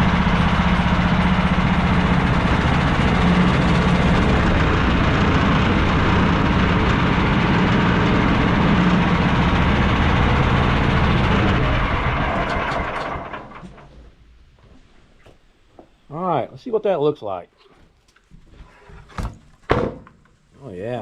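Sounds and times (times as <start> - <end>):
bandsaw mill cutting log: 0.0 - 13.9.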